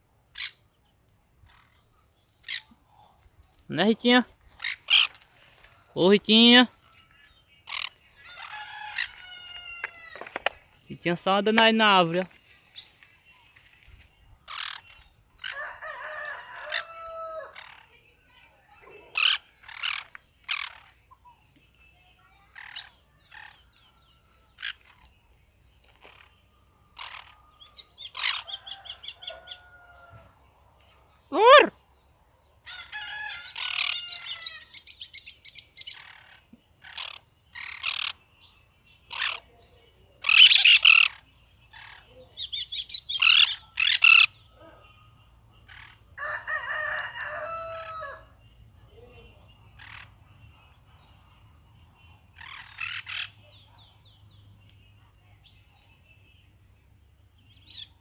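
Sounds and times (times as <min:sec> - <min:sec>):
parakeets screeching: 0:04.6 - 0:05.2, 0:07.6 - 0:10.2, 0:14.5 - 0:17.9, 0:19.1 - 0:21.0, 0:27.0 - 0:27.4, 0:28.1 - 0:28.9, 0:32.9 - 0:34.9, 0:35.8 - 0:38.2, 0:39.1 - 0:39.5, 0:40.2 - 0:44.4, 0:52.4 - 0:53.4
bird singing chirps and trills: 0:06.0 - 0:46.5.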